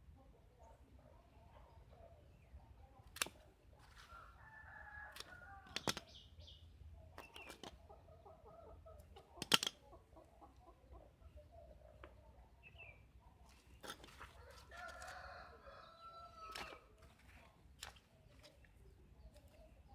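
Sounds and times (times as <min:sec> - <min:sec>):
sharp clicks and snaps: 0:03.1 - 0:03.4, 0:05.2 - 0:06.2, 0:09.1 - 0:09.8
rooster crowing: 0:04.1 - 0:05.7, 0:14.4 - 0:16.6
hens clucking: 0:07.0 - 0:12.2.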